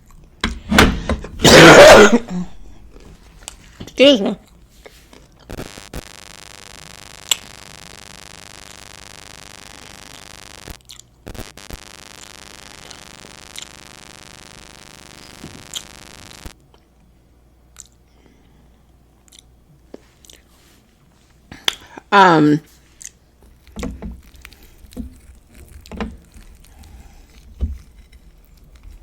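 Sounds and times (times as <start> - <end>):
electrical hum: 0.0 - 29.0
person chewing food: 10.8 - 11.2, 17.7 - 18.0, 18.9 - 20.6, 22.8 - 29.0.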